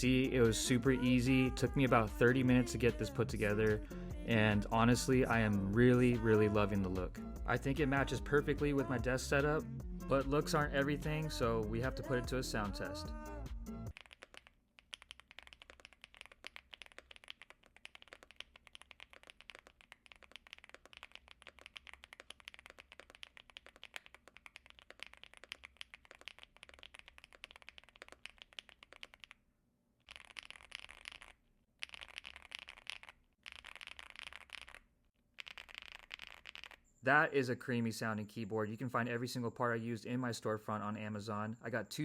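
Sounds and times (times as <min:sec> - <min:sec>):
typing on mechanical keyboard: 0:13.9 - 0:29.4, 0:30.1 - 0:34.8, 0:35.4 - 0:36.8.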